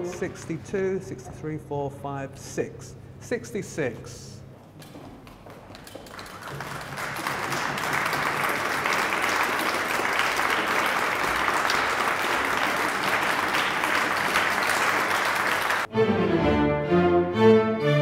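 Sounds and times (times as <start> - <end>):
crowd clapping: 5.7 - 15.9.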